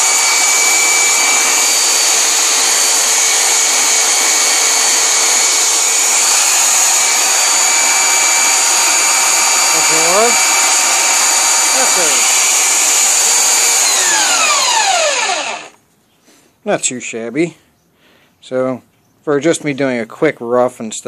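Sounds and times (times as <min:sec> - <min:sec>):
belt sander sanding wood: 0:00.0 - 0:15.8.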